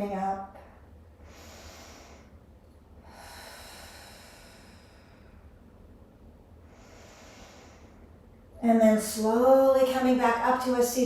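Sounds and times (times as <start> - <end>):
low steady hum: 0.0 - 11.0
slow deep breath: 0.8 - 5.8, 6.6 - 8.2.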